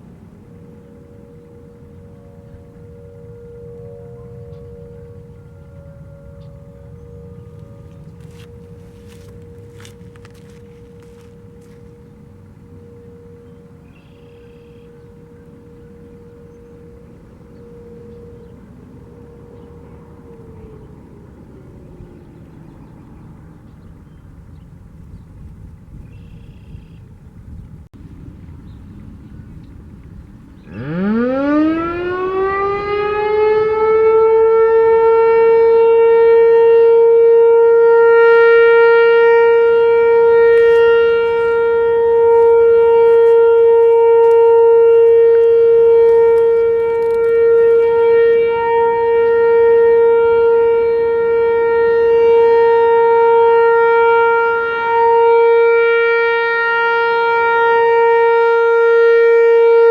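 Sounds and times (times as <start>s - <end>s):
warning siren winding up: 30.7s - 59.9s.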